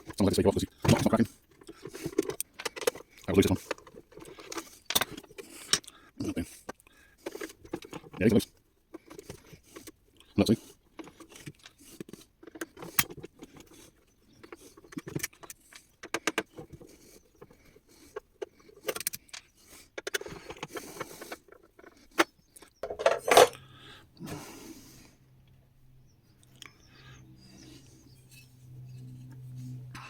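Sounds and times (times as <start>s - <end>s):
plastic housing parts rattling: 12.4s - 23.6s.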